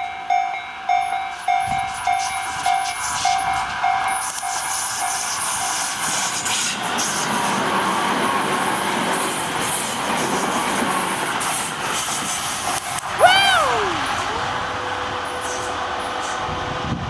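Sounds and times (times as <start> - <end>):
train wheels on rails: 0.8 - 13.0.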